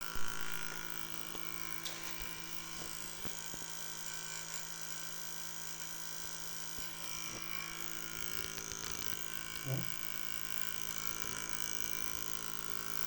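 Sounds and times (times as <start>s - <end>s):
electrical hum: 0.0s - 4.0s, 7.0s - 10.4s.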